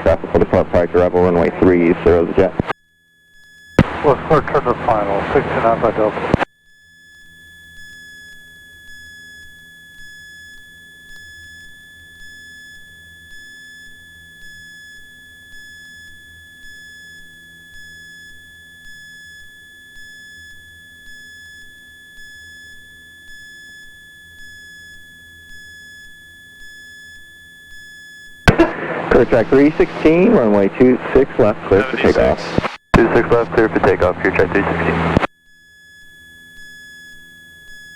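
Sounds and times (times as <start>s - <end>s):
steady high electronic tone: 28.5s - 37.9s.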